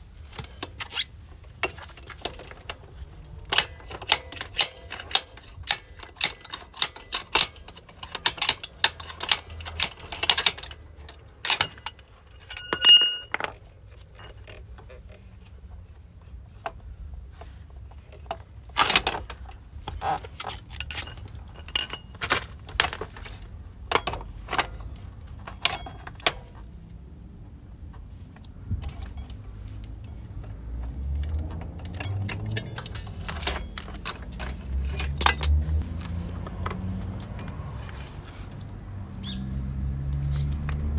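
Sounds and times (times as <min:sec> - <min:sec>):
metal tools clicking and clinking: 0:01.6 - 0:14.8, 0:18.8 - 0:26.5, 0:28.8 - 0:38.7
loud ringing metal clink: 0:03.6 - 0:13.7.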